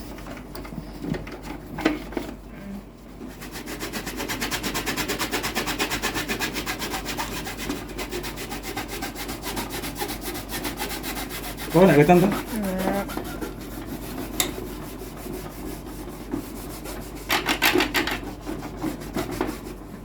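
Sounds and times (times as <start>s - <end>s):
scrubbing on hard surface: 3.2s - 19.9s.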